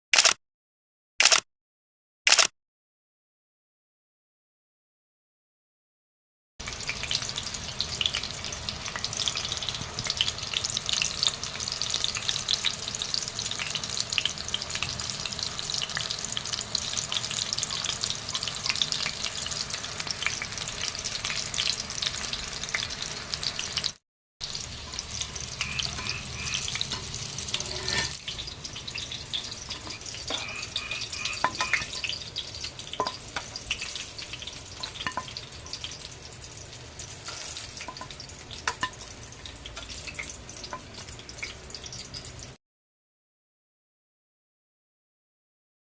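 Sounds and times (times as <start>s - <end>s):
food sizzling in hot oil: 6.6s - 42.6s.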